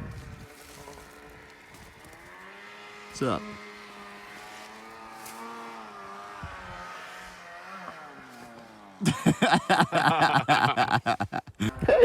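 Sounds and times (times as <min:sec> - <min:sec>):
snowmobile engine running: 0:00.0 - 0:12.0
voices: 0:09.0 - 0:12.0.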